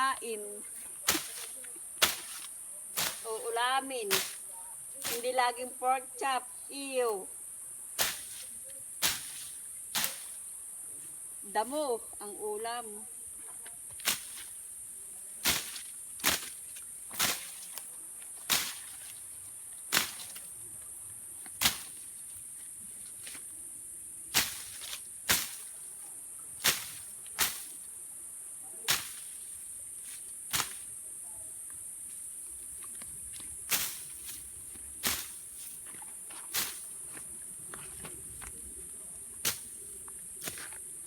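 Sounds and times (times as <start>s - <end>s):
insects droning: 0.0s - 41.0s
machete swishing through grass: 1.0s - 5.4s, 8.0s - 10.5s, 14.0s - 14.6s, 15.4s - 20.5s, 21.6s - 22.1s, 24.3s - 25.9s, 26.6s - 27.9s, 28.9s - 31.0s, 33.6s - 37.2s, 39.4s - 40.8s.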